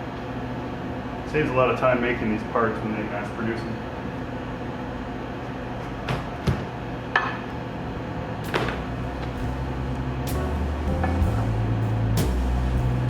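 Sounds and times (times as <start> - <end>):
steady low hum: 0.0 - 13.0
deeper hum: 8.4 - 13.0.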